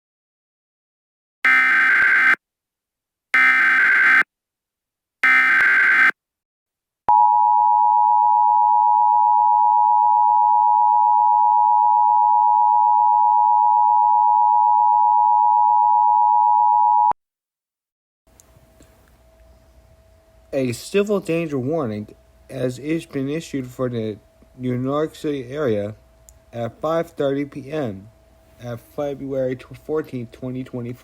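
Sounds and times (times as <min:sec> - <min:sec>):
two-tone alarm: 0:01.4 - 0:02.4, 0:03.4 - 0:04.3, 0:05.2 - 0:06.2
buzzy data header burst: 0:01.5 - 0:02.4.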